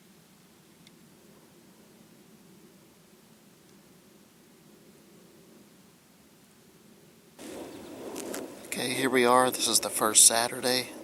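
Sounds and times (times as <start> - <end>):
faint background hiss: 0.0 - 11.0
low hum: 7.4 - 11.0.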